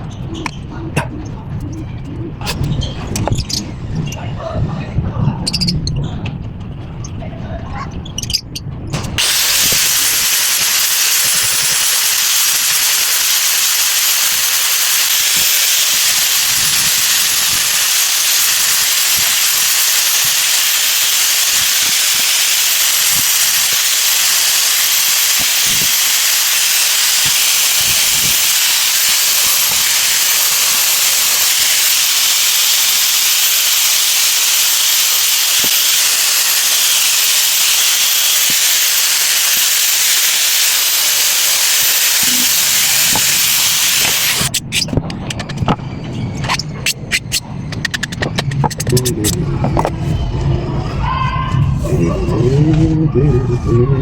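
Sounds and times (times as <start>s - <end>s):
loud steady hiss: 9.0s - 44.7s
very high wavering whine: 9.0s - 44.8s.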